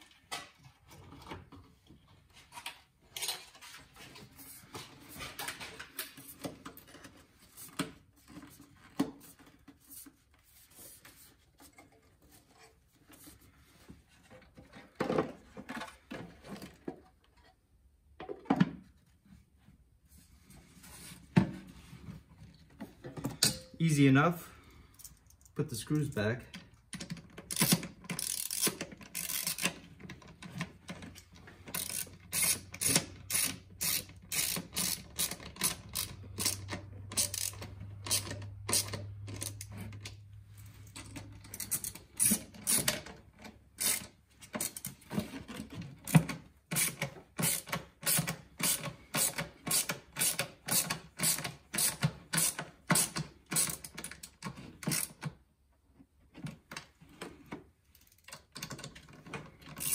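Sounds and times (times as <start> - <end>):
hand ratchet clicking: 27.0 - 29.8, 31.7 - 39.8, 41.5 - 43.0, 43.8 - 44.9, 46.7 - 55.2.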